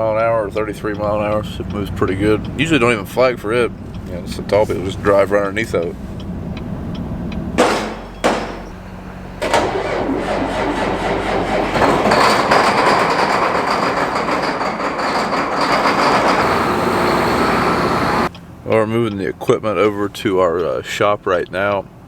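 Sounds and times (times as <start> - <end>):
vehicle rattling clatter: 0.0 - 22.0
sharp knocks: 7.5 - 18.3.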